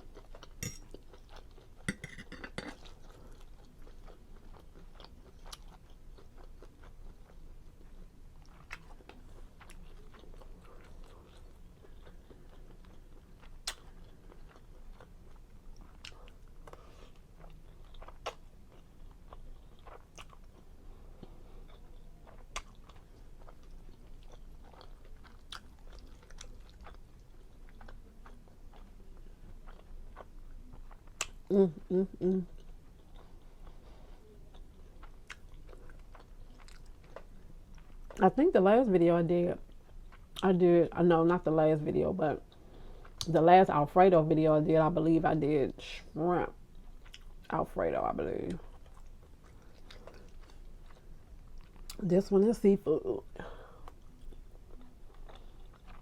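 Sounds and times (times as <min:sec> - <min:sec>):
person chewing: 0:00.0 - 0:38.2, 0:46.7 - 0:47.5, 0:48.6 - 0:52.0, 0:53.6 - 0:56.0.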